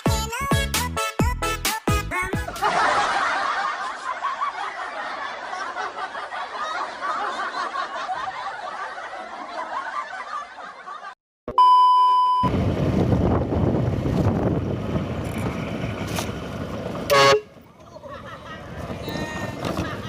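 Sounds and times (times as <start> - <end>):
crowd laughing: 2.4 - 11.2, 17.7 - 20.0
steady electronic beep: 11.5 - 12.5.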